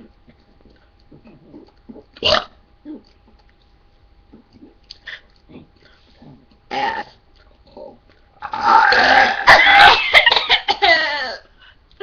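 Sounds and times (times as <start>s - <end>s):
person belching: 6.7s - 7.2s, 8.4s - 9.9s.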